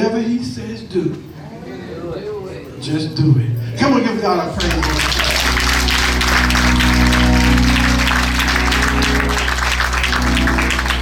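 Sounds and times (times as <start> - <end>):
church keyboard chords: 2.8 - 11.0
congregation clapping and praising: 4.5 - 11.0.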